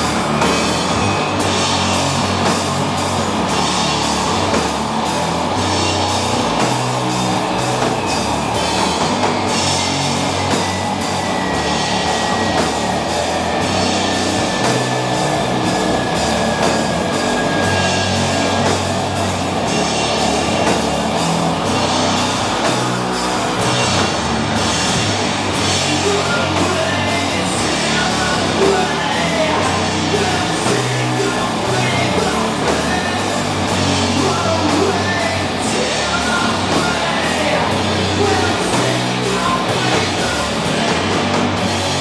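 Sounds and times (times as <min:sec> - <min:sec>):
cymbals struck: 0:00.0 - 0:40.6
distorted guitar and bass: 0:00.0 - 0:42.0
drums: 0:00.0 - 0:42.0.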